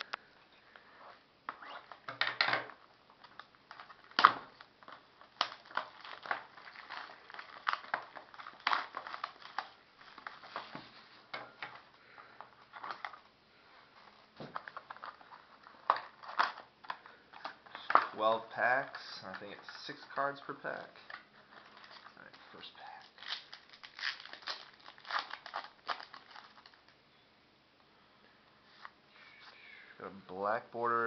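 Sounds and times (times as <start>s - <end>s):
packaging crinkling and tearing: 1.6s - 10.8s, 11.6s - 13.3s, 14.0s - 27.0s.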